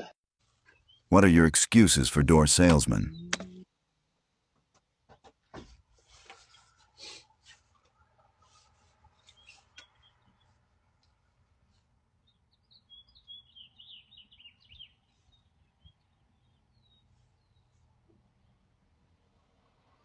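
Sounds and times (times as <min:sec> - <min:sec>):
faint bird chirping: 0:12.2 - 0:18.6.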